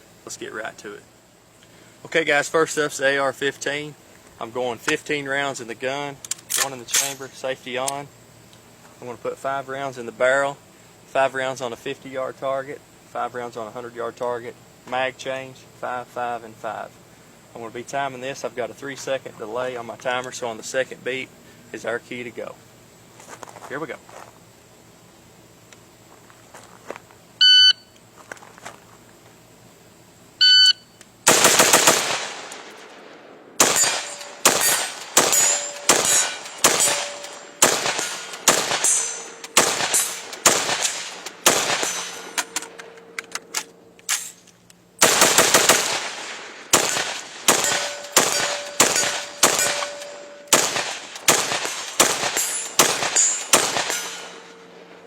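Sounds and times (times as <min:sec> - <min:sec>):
shot timer beeps: 0:27.4 - 0:28.0, 0:30.4 - 0:31.0
rifle shots echoing: 0:31.3 - 0:43.2, 0:45.0 - 0:55.0.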